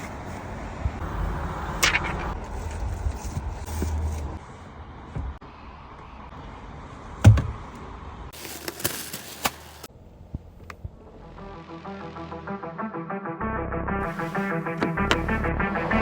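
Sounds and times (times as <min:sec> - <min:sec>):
heavy thump: 0:07.2 - 0:07.7.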